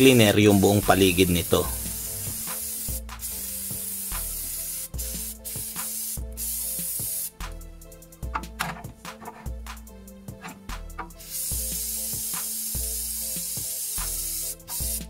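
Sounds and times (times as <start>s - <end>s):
aerosol spray hissing: 0.0s - 7.6s, 10.4s - 15.0s.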